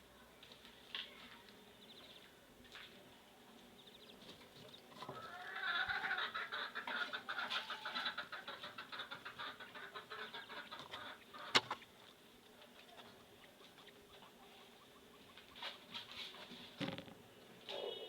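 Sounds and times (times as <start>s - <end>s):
quail chirping: 3.8s - 11.9s, 12.8s - 16.6s.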